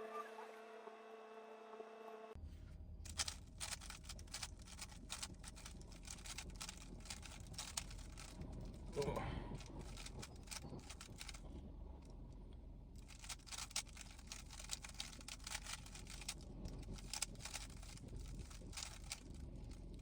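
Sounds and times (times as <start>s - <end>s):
plastic clicks of cube turns: 3.1s - 8.5s, 13.0s - 20.0s.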